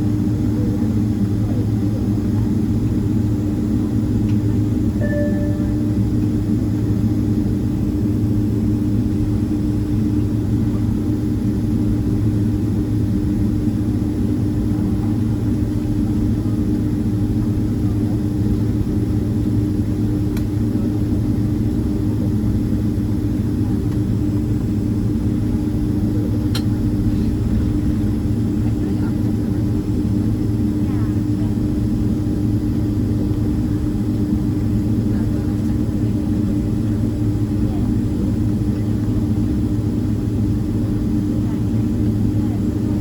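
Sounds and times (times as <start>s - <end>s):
constant low hum: 0.0s - 43.0s
jet engine cabin drone: 0.0s - 43.0s
short single beep: 5.0s - 5.9s.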